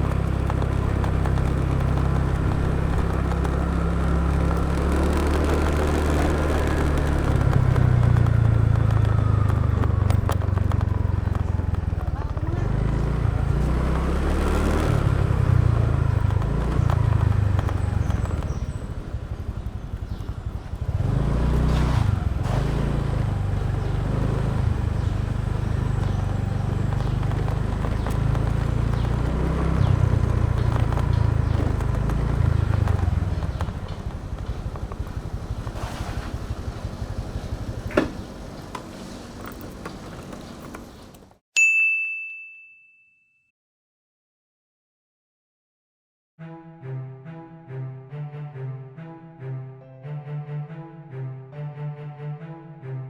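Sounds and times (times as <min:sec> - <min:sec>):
motorbike engine running: 0:00.0 - 0:41.4
road and wind noise: 0:00.0 - 0:41.4
bright ding: 0:41.6 - 0:43.5.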